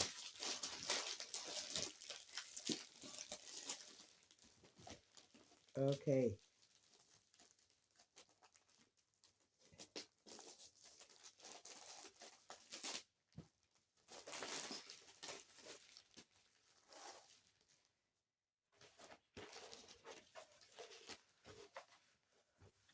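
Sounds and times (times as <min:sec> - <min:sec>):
packaging rustling and crinkling: 0:00.0 - 0:17.9, 0:18.8 - 0:22.9.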